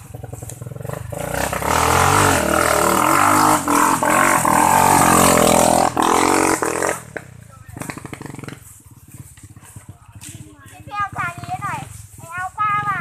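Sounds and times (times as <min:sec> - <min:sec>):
vehicle engine revving hard: 0:00.7 - 0:07.1.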